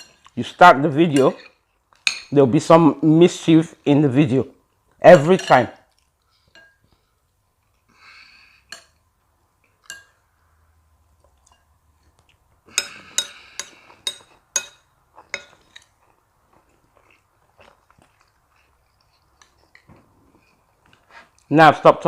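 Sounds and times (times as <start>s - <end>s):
cutlery clinking against plate: 0.0s - 0.4s, 1.1s - 2.4s, 5.2s - 7.0s, 8.7s - 9.0s, 9.8s - 10.2s, 11.4s - 11.7s, 12.7s - 16.0s.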